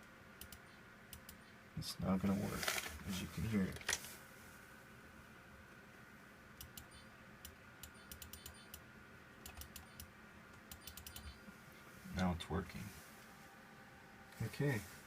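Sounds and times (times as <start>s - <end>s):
faint electrical hum: 0.0s - 15.0s
computer control clicks: 6.6s - 8.8s, 9.4s - 11.4s.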